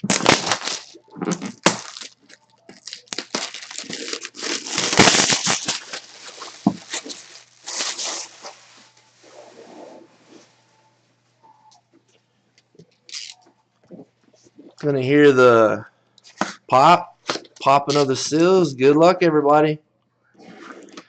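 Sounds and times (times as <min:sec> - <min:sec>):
plastic packaging tearing and crinkling: 0:00.0 - 0:09.0, 0:13.1 - 0:13.4, 0:17.2 - 0:18.4.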